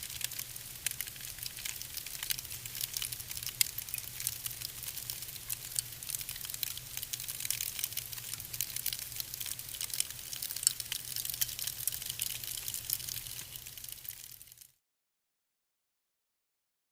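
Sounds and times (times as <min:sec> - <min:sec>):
soft fire hiss: 0:00.0 - 0:14.8
wood fire crackling and popping: 0:00.0 - 0:14.8.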